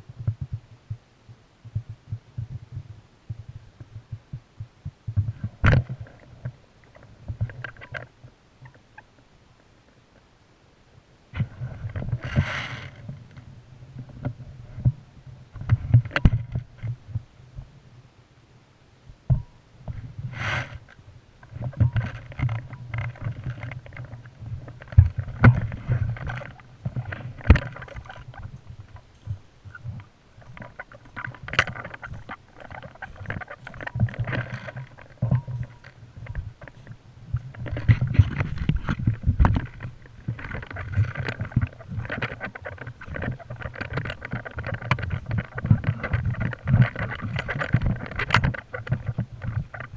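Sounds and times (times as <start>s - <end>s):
sharp clicks and knocks: 15.6s - 17.2s, 20.7s - 49.9s
action camera jostling in housing: 30.4s - 49.9s.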